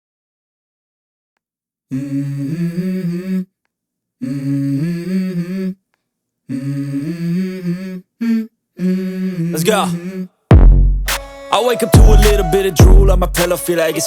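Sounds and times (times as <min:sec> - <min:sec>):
person humming wordless melody: 0:11.1 - 0:14.0.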